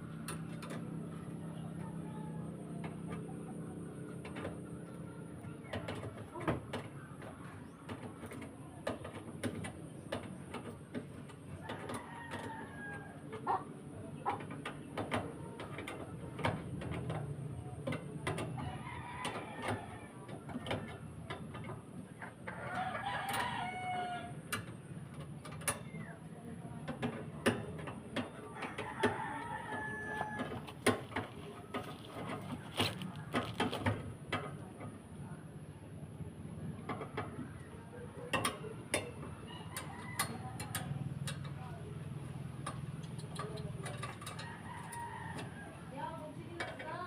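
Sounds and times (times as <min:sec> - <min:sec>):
rooster crowing: 0:11.6 - 0:13.3, 0:22.5 - 0:24.4, 0:28.5 - 0:30.7, 0:44.4 - 0:45.9.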